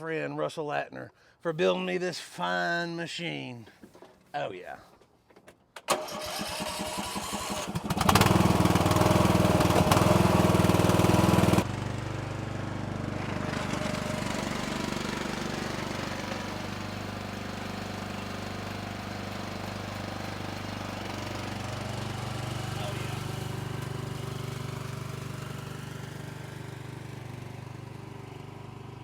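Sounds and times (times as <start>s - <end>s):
small engine running: 5.9s - 29.0s.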